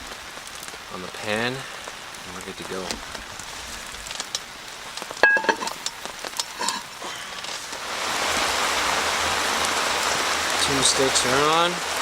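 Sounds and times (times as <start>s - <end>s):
faint sizzle: 0.0s - 12.0s
loud ringing clank: 5.2s - 5.8s
metal cookware clinking: 5.2s - 5.9s.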